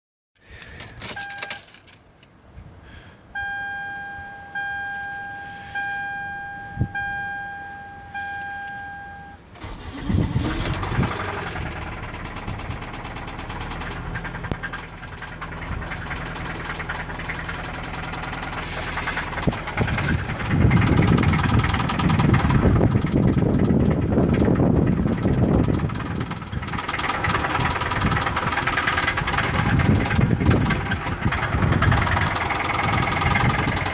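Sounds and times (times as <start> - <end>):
car engine cranking and idling: 0.4 - 33.9
car warning chime: 1.2 - 1.6, 3.4 - 9.4.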